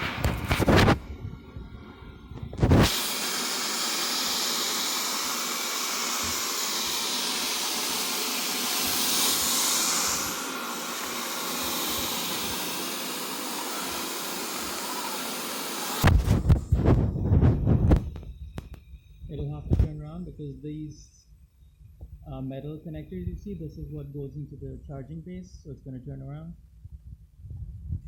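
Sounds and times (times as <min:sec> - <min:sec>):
robot vacuum suction fan hiss: 0:01.7 - 0:19.2.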